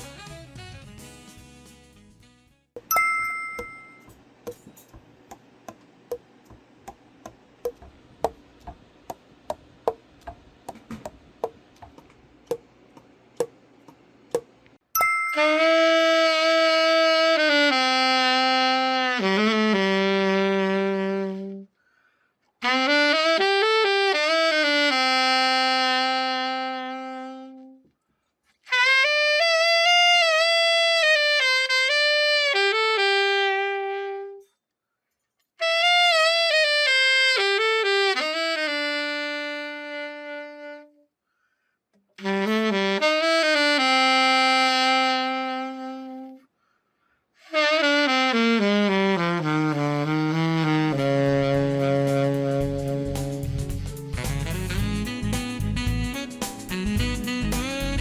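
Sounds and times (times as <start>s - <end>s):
alto saxophone melody: 0.0s - 2.8s, 15.3s - 28.0s, 28.6s - 34.6s, 35.6s - 41.2s, 42.1s - 46.5s, 47.4s - 58.0s.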